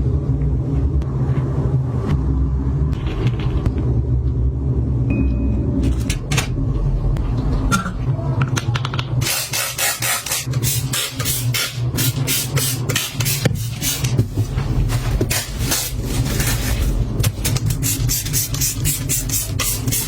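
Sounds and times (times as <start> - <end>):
steady low hum: 0.0 - 20.0
scraping strokes: 9.8 - 20.0.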